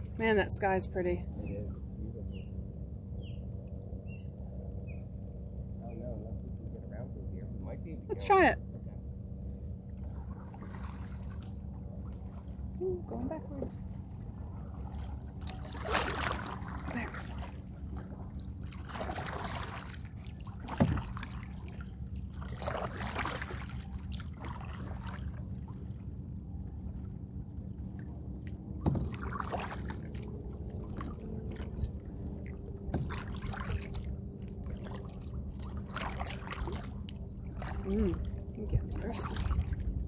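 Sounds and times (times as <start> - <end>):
steady low hum: 0.0 - 40.0
paddle swishing through water: 9.9 - 26.1, 27.8 - 40.0
water trickling off paddle: 27.8 - 40.0.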